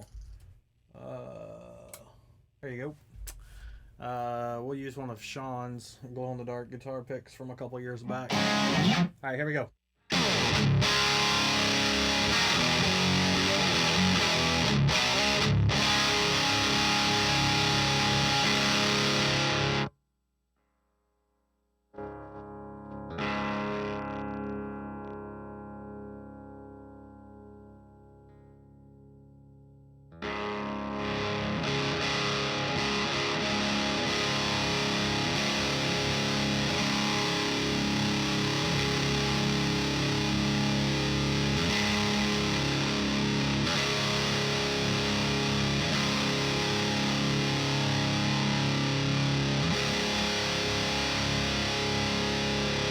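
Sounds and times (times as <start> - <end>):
distorted electric guitar riff: 8.1 - 9.2, 10.1 - 19.9, 22.0 - 29.2, 30.1 - 52.9.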